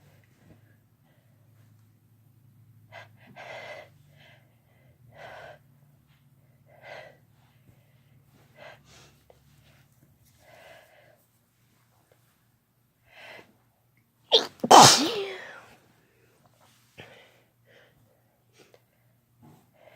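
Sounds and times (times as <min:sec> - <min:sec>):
person gasping before sneeze: 0:14.4 - 0:15.7.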